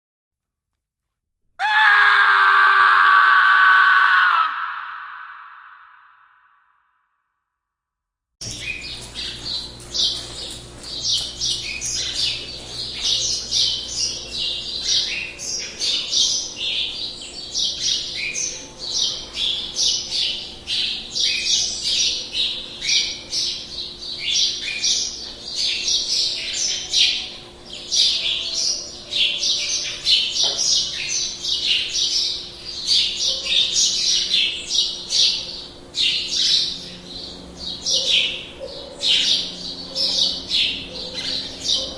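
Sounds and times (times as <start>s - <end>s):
birds chirping and squawking: 8.4s - 41.9s.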